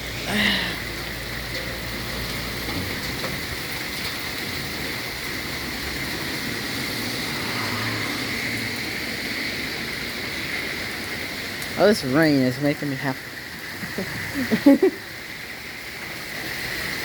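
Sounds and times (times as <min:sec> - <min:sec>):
low rumble: 0:00.0 - 0:09.2
heavy rain falling: 0:00.0 - 0:17.0.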